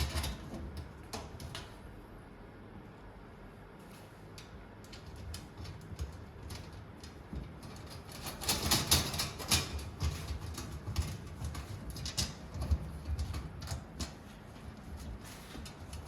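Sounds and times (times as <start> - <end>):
metal rack parts clicking and knocking: 0.0 - 1.8, 4.4 - 14.5.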